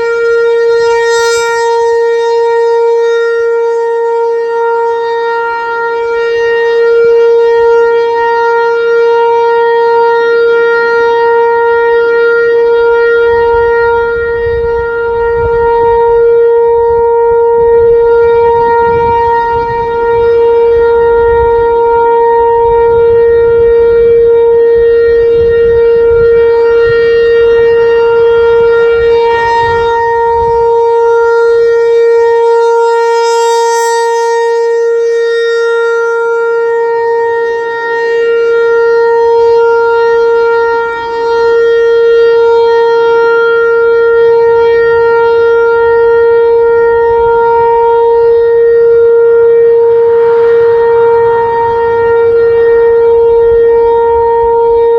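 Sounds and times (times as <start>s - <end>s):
tornado siren steady tone: 0.0s - 54.9s.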